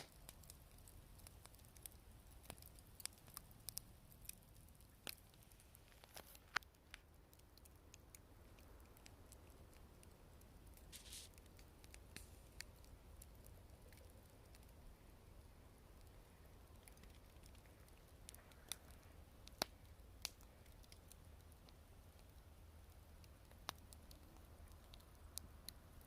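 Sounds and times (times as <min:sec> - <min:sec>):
campfire crackling and popping: 0:00.0 - 0:26.0
short hiss: 0:10.9 - 0:11.4.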